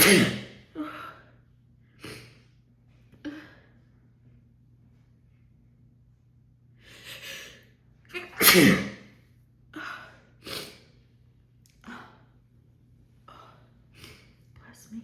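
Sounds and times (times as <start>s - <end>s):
woman sneezing: 0.0s - 0.6s, 8.2s - 9.1s.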